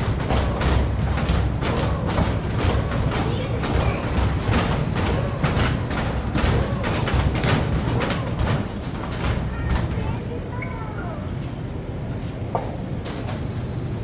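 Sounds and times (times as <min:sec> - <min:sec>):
balls hitting backboard and rim: 0:00.0 - 0:10.0.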